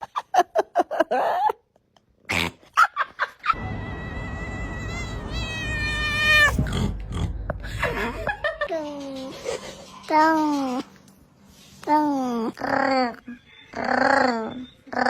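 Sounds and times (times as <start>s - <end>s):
cat crying: 3.6s - 6.7s
low rumble: 3.6s - 8.9s.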